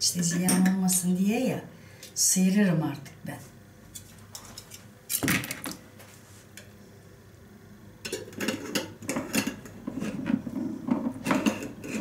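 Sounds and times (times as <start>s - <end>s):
spoon scraping a container: 8.4s - 12.0s.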